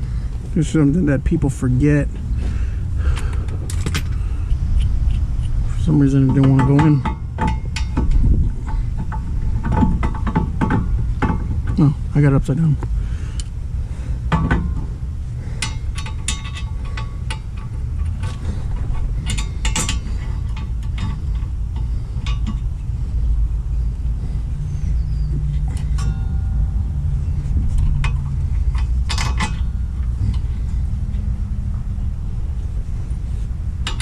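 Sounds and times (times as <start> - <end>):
steady low rumble: 0.0 - 34.0.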